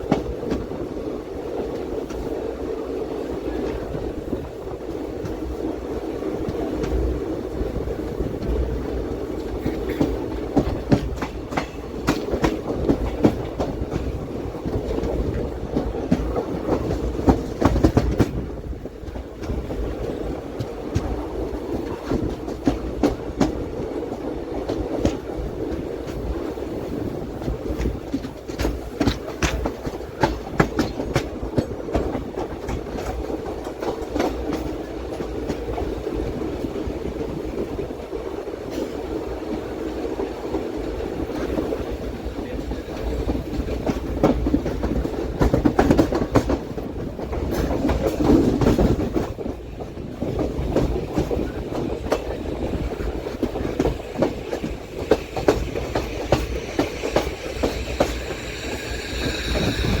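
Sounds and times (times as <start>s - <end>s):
train rumbling on track: 0.0s - 60.0s
high squealing tone: 56.8s - 60.0s.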